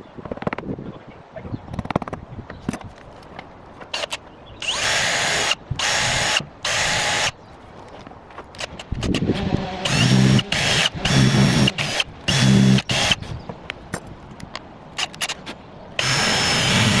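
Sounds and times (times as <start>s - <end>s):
power tool bursts: 4.0s - 7.3s, 9.0s - 13.2s, 16.0s - 17.0s.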